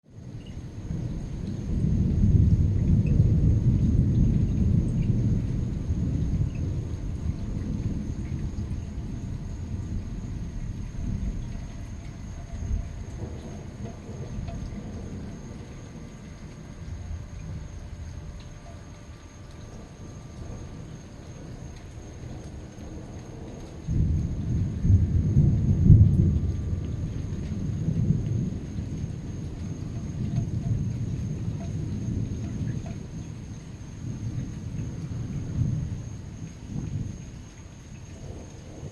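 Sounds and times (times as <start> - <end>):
rolling thunder: 0.1 - 38.9.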